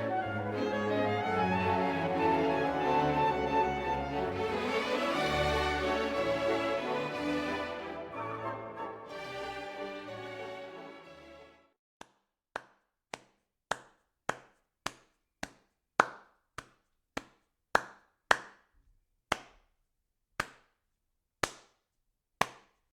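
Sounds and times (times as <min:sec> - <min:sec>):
background music: 0:00.0 - 0:11.6.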